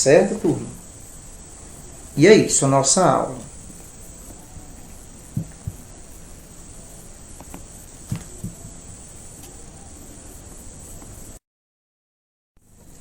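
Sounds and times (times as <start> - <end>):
faint high-pitched hiss: 0.0 - 11.4, 12.6 - 13.0
soft low thumps: 3.6 - 6.5, 7.4 - 8.8.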